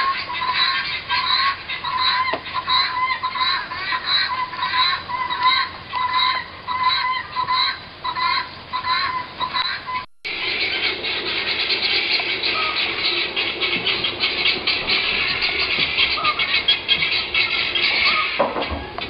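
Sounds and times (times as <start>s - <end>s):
guinea fowl flock calling: 0.0s - 19.0s.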